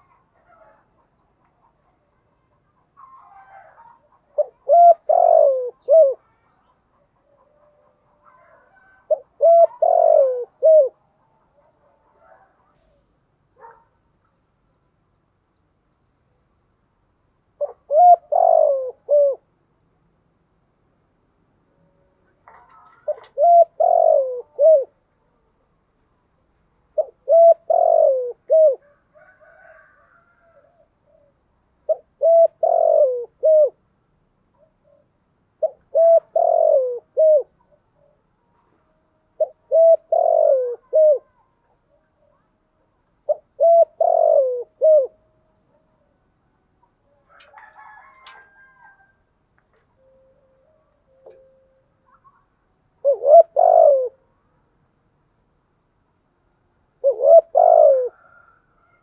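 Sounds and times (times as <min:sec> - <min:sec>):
dove cooing: 0:00.0 - 0:01.8, 0:03.0 - 0:12.7, 0:17.6 - 0:19.6, 0:22.4 - 0:25.1, 0:26.9 - 0:33.9, 0:34.6 - 0:46.2, 0:46.8 - 0:49.1, 0:50.2 - 0:54.3, 0:57.0 - 0:59.0.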